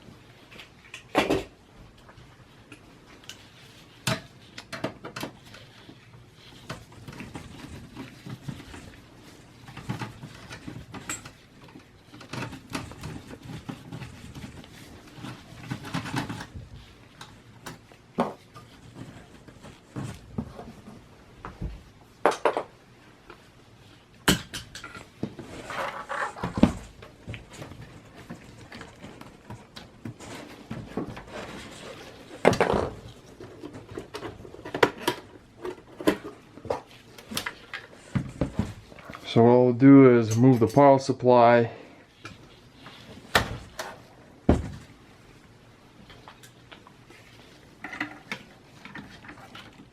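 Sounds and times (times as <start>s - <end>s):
computer case parts being handled: 4.0s - 21.1s.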